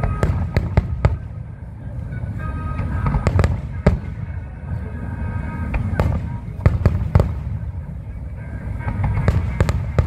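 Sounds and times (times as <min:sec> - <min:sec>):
fireworks bangs: 0:00.0 - 0:01.6, 0:02.6 - 0:04.5, 0:05.6 - 0:08.0, 0:08.6 - 0:10.0
deep continuous rumble: 0:00.0 - 0:10.0
music playing: 0:00.0 - 0:10.0.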